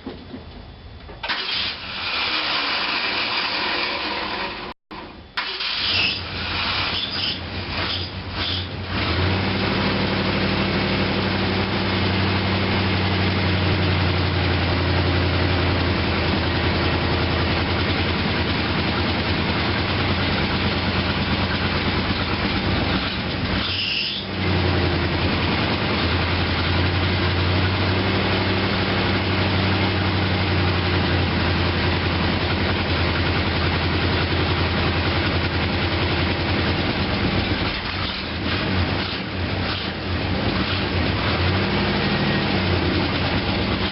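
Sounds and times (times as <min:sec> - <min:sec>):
car engine idling: 0:09.7 - 0:43.9.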